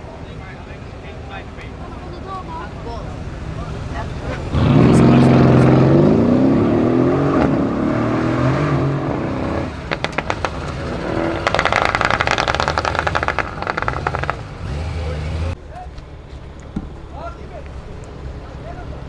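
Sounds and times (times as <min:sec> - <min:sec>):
car engine accelerating hard: 0:01.8 - 0:19.0
exhaust pops and crackles: 0:08.8 - 0:14.6, 0:15.6 - 0:19.0.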